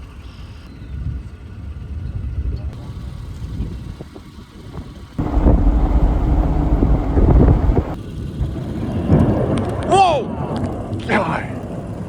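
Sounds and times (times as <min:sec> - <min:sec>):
vehicle low rumble: 0:05.0 - 0:08.0
thunder rumbling and cracking: 0:05.2 - 0:09.8.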